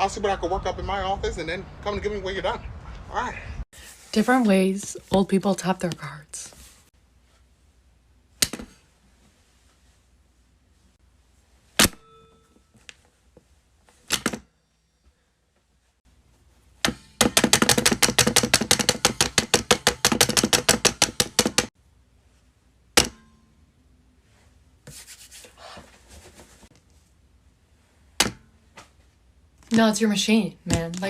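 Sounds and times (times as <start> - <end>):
card tapping payment terminal: 17.2 - 21.7.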